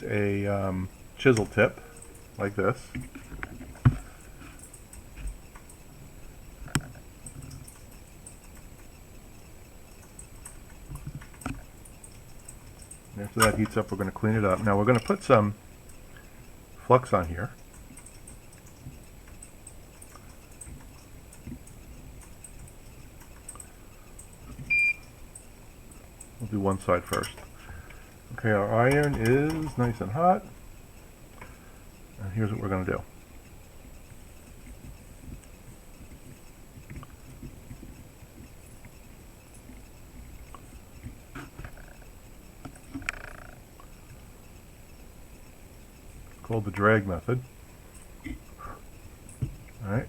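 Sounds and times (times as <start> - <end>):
small clicks and ticks: 0.0 - 50.0
workbench handling noises: 2.8 - 5.4, 28.9 - 30.0.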